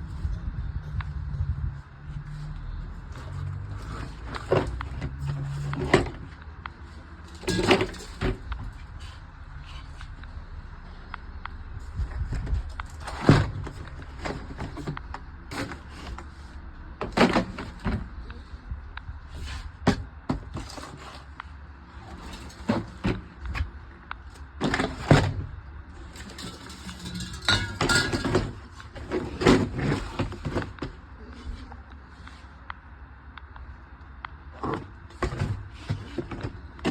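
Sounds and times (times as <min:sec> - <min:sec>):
tools rattling: 0:26.1 - 0:28.6
tools clicking and clattering: 0:26.2 - 0:28.5.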